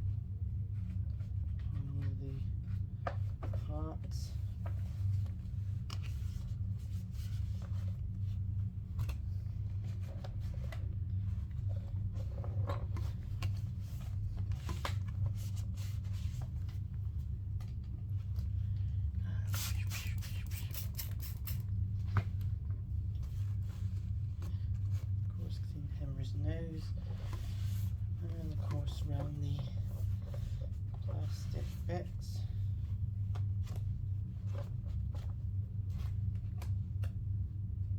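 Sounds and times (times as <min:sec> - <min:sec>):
steady low hum: 0:00.0 - 0:37.9
cloth wiping plastic: 0:19.5 - 0:21.6.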